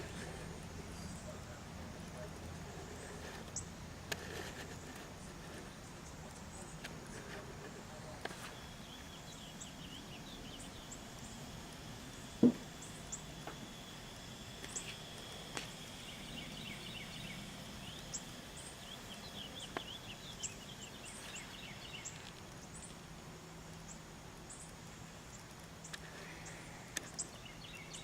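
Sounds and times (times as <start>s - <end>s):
birds chirping: 0.0s - 23.0s, 23.7s - 28.0s
sharp knock: 12.4s - 12.6s.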